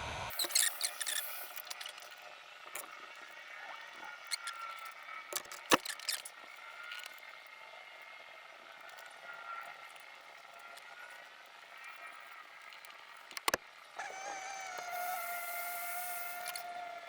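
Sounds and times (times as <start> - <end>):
faint short squeaks: 0.3 - 2.1
handling taps and clicks: 13.3 - 13.6.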